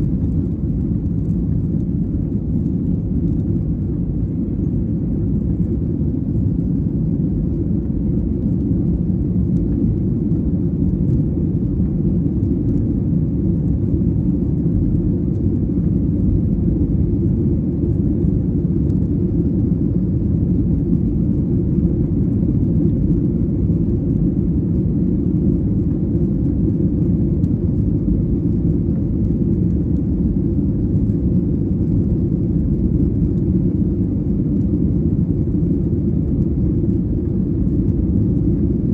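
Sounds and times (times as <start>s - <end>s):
jet engines rumbling in cabin: 0.0s - 38.9s.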